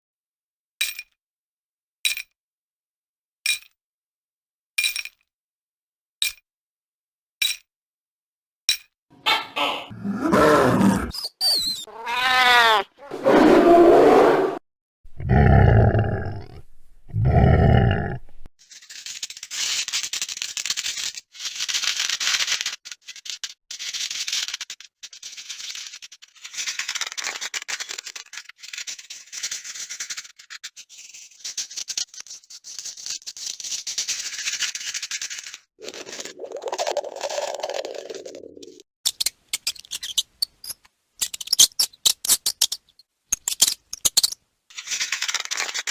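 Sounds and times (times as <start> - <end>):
animal growl sound effects: 9.7 - 11.2, 13.0 - 18.5.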